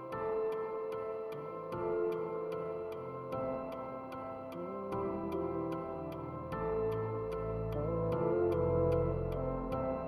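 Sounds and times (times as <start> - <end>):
soft held chords: 0.0 - 10.0.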